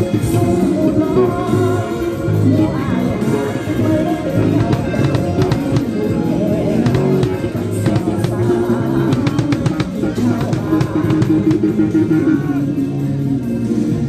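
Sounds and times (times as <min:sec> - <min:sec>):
band playing: 0:04.3 - 0:13.0.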